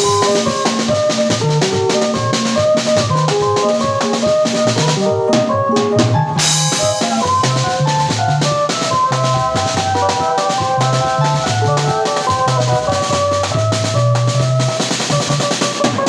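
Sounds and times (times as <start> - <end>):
band playing live: 0.0 - 16.0
drum kit beat: 0.0 - 16.0
cymbal crash: 6.4 - 8.0.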